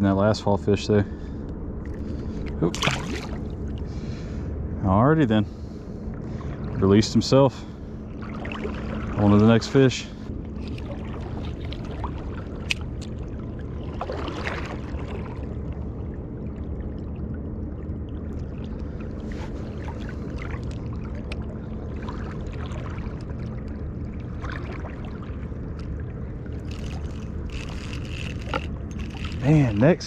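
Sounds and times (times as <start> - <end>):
small clicks and splashes: 2.4 - 3.4, 10.6 - 15.8, 18.3 - 29.9
creek water flowing: 18.2 - 30.0.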